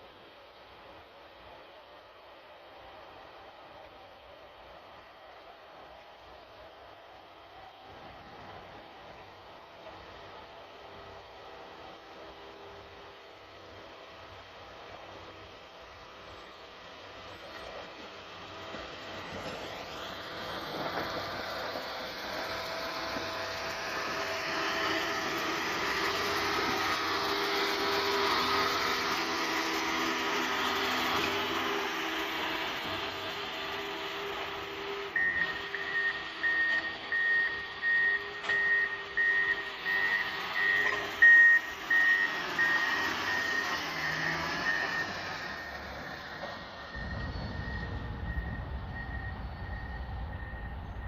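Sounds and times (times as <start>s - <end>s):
diesel engine running: 0.0s - 51.0s
reversing alarm beeping: 35.0s - 51.0s.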